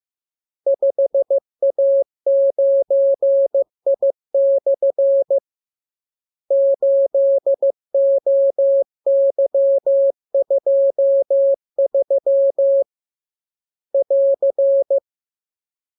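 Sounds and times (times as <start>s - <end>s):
morse code beeps: 14.0s - 15.0s.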